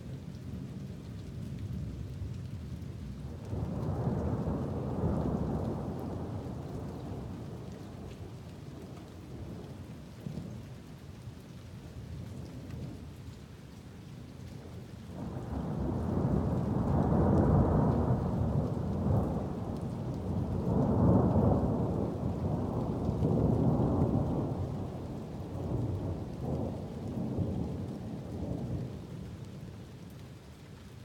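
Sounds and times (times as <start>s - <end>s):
steady rain: 0.0s - 31.0s
rolling thunder: 15.2s - 28.9s.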